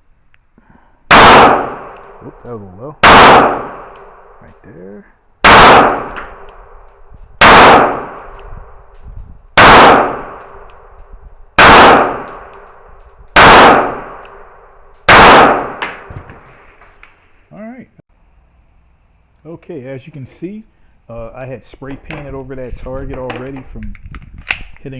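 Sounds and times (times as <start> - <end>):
gunshots: 1.1 - 2.0, 3.0 - 4.4, 5.4 - 6.7, 7.4 - 8.5, 9.6 - 10.7, 11.6 - 12.7, 13.3 - 16.6.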